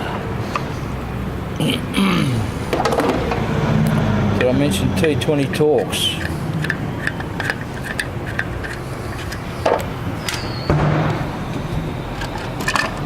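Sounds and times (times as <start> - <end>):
screwdriver clicking and scraping: 6.1 - 10.4.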